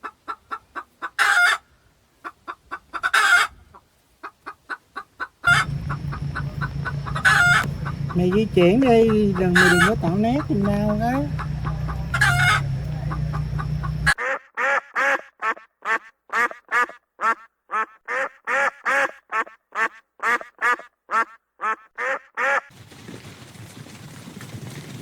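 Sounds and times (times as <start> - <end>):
chickens clucking: 0.0 - 1.6, 2.2 - 3.6, 4.2 - 14.2
waterfowl calling: 5.0 - 22.7
faint low rumbling: 5.5 - 14.2
low hum: 5.5 - 14.2.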